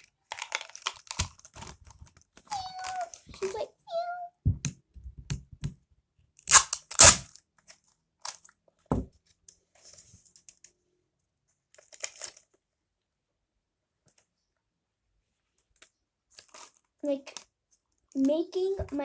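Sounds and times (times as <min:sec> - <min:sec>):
paper crunching and tearing: 0:06.5 - 0:07.2.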